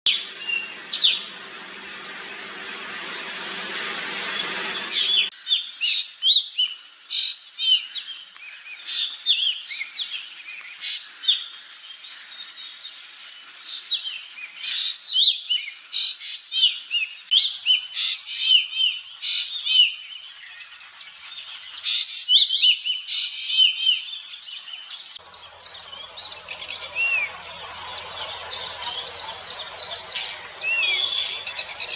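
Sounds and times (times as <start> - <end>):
birds chirping: 0.0 - 5.7, 24.3 - 31.9.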